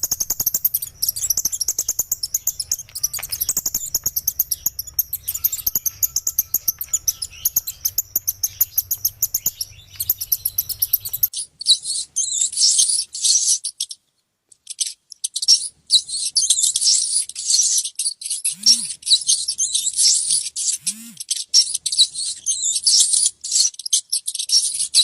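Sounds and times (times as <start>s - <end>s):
small birds chirping: 0.0s - 14.0s, 14.6s - 25.0s.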